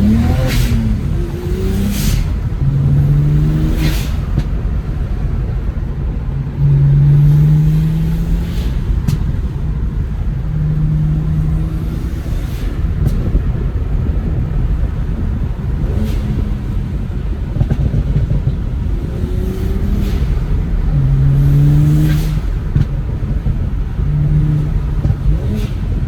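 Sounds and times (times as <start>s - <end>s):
car engine revving under hard driving: 0.0s - 26.0s
road rumble: 0.0s - 26.0s.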